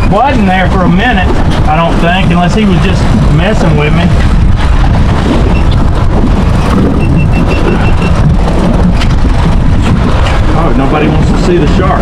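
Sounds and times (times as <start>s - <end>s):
boat engine rumble: 0.0s - 12.0s
quick high electronic beeps: 7.0s - 8.2s.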